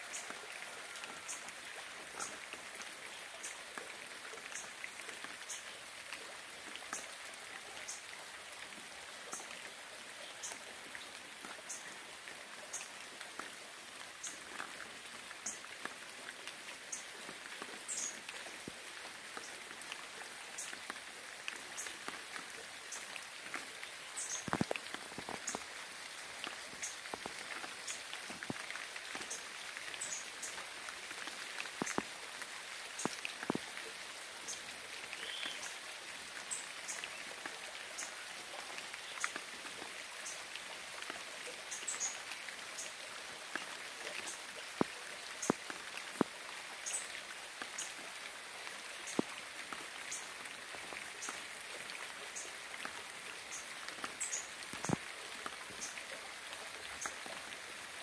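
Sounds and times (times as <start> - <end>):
steady rain: 0.0 - 58.0
raindrops tapping nearby: 14.2 - 30.6, 31.2 - 33.8, 43.5 - 48.1, 49.0 - 50.2, 52.7 - 56.0.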